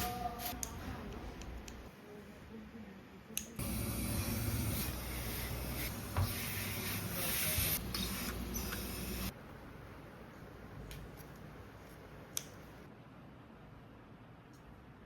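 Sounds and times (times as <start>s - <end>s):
click: 12.3s - 12.6s.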